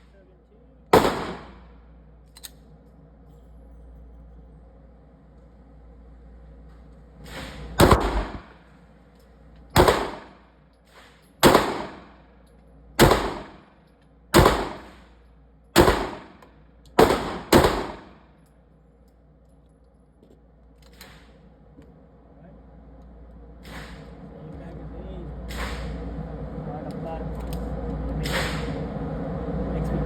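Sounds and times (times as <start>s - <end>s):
pistol shots: 0.9s - 1.7s, 7.8s - 8.6s, 9.8s - 10.4s, 11.4s - 12.2s, 13.0s - 13.7s, 14.3s - 15.0s, 15.8s - 16.4s, 17.0s - 18.2s.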